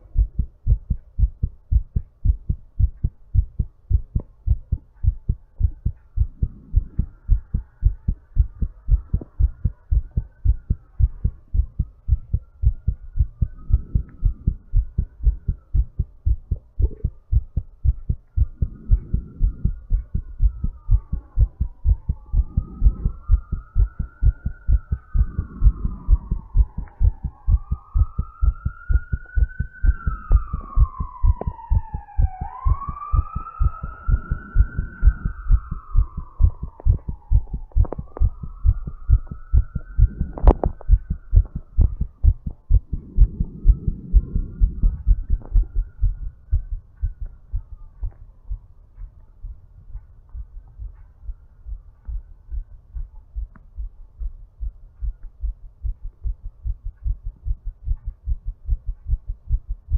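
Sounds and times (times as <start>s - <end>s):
heartbeat thumps: 0.0s - 59.9s
siren wailing: 3.0s - 48.2s
soft rush of breath: 18.5s - 20.6s, 25.0s - 27.3s, 42.8s - 45.3s.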